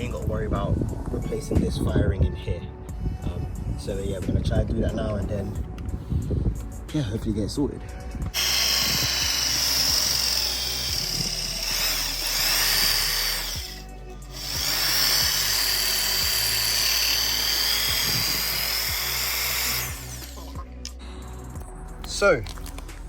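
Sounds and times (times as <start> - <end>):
power drill whining: 8.4 - 20.6.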